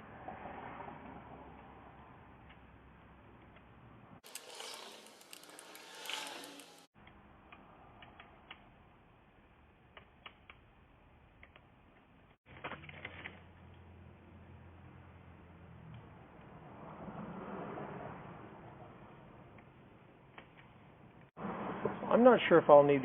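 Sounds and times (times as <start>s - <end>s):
metal parts clicking and rattling: 4.2s - 6.9s.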